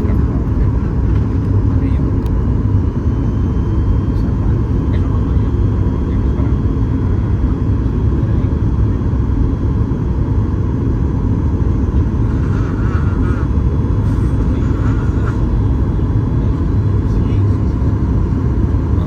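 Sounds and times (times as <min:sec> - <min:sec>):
low rumble of aircraft cabin: 0:00.0 - 0:19.0.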